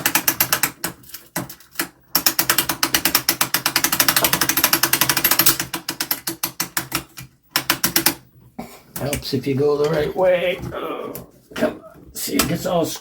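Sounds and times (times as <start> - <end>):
ratchet clicking rapidly: 2.2 - 6.7.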